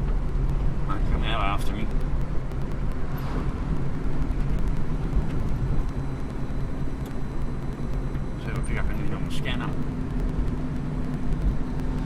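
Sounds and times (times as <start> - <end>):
car engine and road noise: 0.0 - 12.0.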